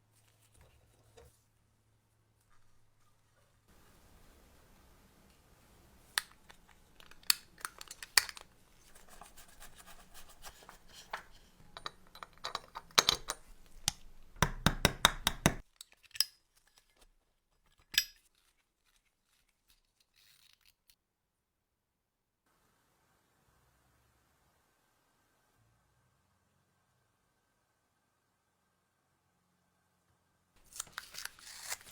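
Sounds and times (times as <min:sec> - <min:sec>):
small parts and tools clicking: 0:06.2 - 0:08.5, 0:10.9 - 0:14.2, 0:15.4 - 0:21.0.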